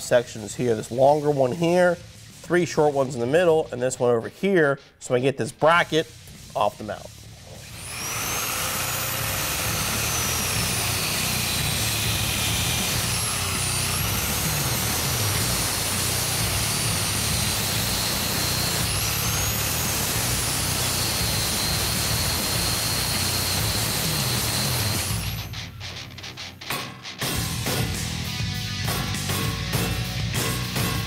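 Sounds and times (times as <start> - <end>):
grinder cutting metal: 7.4 - 28.0.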